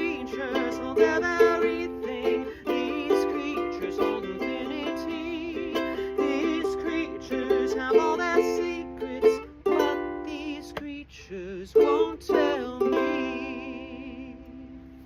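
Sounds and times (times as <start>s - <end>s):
ukulele strumming chords: 0.0s - 15.0s
wordless singing: 0.0s - 15.0s.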